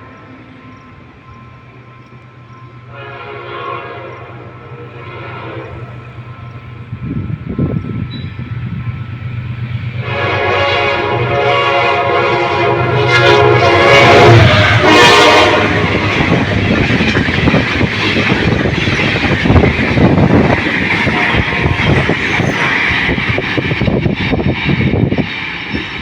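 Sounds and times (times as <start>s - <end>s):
train cars rushing and clattering: 0.0s - 26.0s
locomotive horn: 2.8s - 6.2s, 10.0s - 17.6s, 20.0s - 23.2s.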